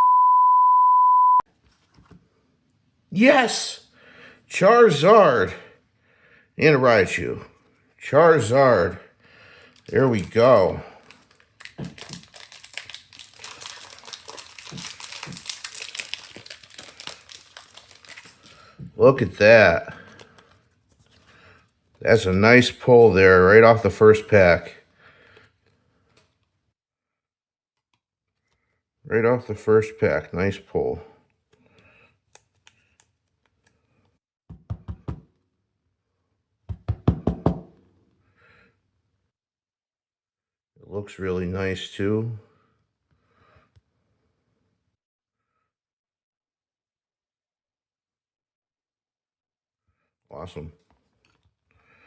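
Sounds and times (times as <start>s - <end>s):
plastic and foil packaging crinkling: 9.7s - 18.8s
sharp knocks on hard surface: 34.5s - 35.3s, 36.7s - 37.7s.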